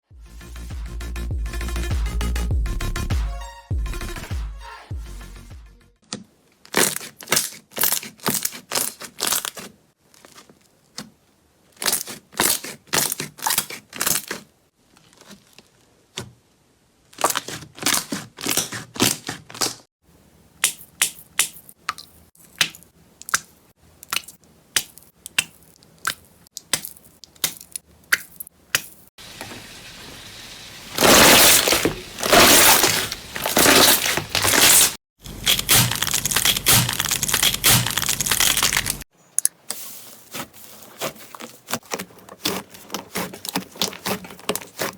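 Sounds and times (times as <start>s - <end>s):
slime crackling and popping: 31.0s - 39.0s.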